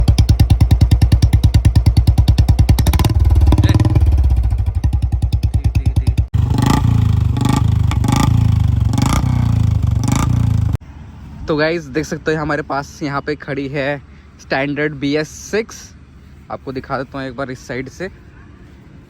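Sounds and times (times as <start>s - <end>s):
motorcycle engine idling and revving: 0.0s - 10.8s
motorcycle throttle blips: 0.0s - 10.8s.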